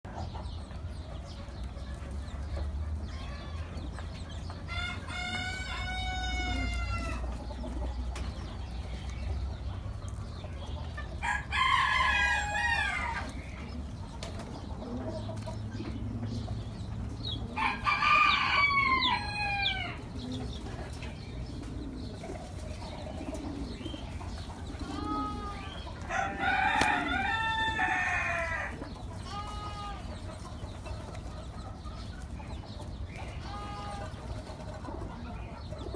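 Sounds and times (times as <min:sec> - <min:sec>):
rooster crowing: 0:04.7 - 0:07.2, 0:11.2 - 0:13.2, 0:17.6 - 0:20.0, 0:25.0 - 0:28.8.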